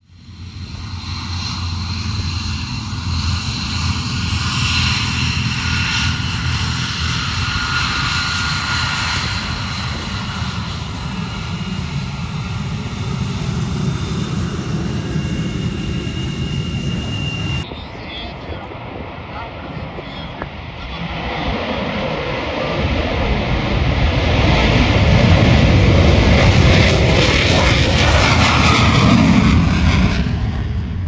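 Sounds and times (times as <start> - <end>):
airplane engine drone: 0.0 - 31.0
high steady tones: 2.8 - 17.7.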